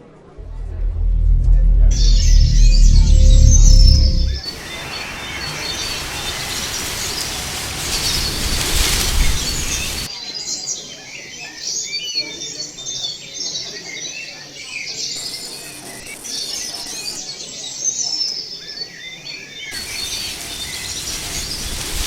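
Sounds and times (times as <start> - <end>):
rushing noise: 0.4 - 10.1.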